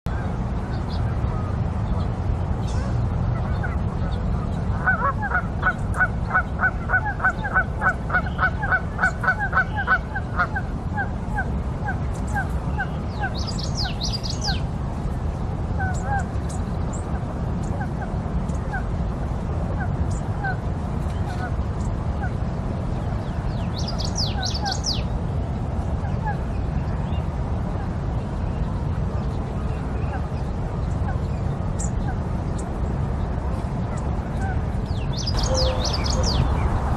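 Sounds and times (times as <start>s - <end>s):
low rumble: 0.1s - 36.9s
small birds chirping: 11.9s - 14.7s, 23.1s - 25.1s, 28.1s - 36.8s
bird calling: 23.7s - 25.1s, 34.4s - 36.7s.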